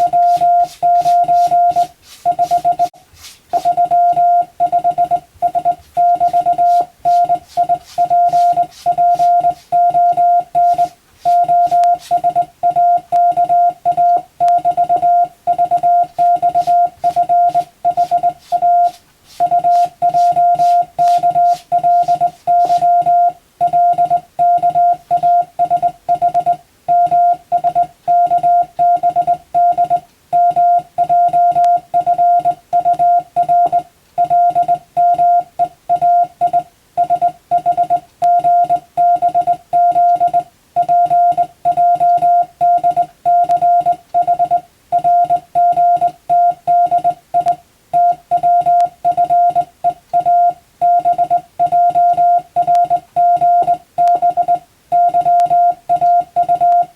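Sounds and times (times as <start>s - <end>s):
morse code beeps: 0.0s - 2.9s, 3.5s - 56.9s.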